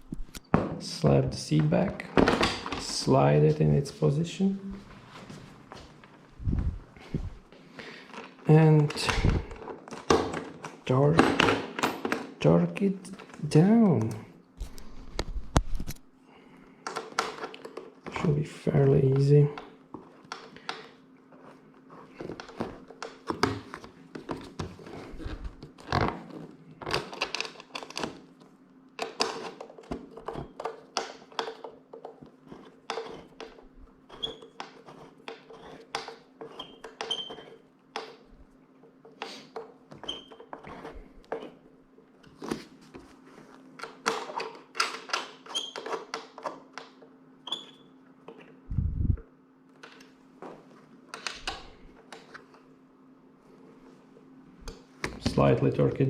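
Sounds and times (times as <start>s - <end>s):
steady low hum: 0.0s - 11.5s, 12.3s - 27.1s, 48.0s - 56.0s.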